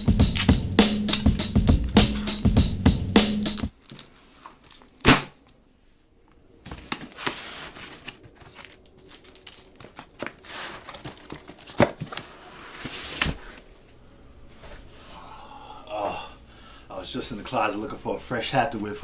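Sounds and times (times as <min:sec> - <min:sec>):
crinkling rustles with small clicks: 0:03.7 - 0:05.6, 0:06.2 - 0:14.0
rustling handling noises: 0:03.7 - 0:15.1.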